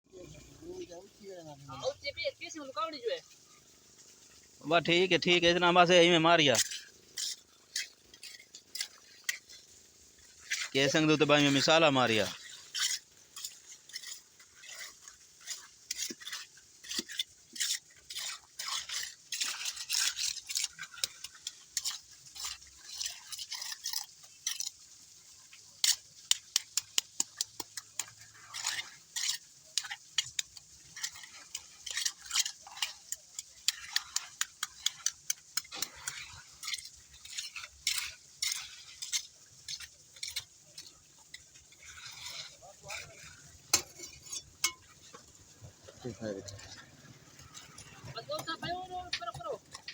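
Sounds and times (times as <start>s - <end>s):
metal tools scraping in concrete: 6.6s - 9.5s, 10.5s - 24.8s, 28.0s - 49.9s.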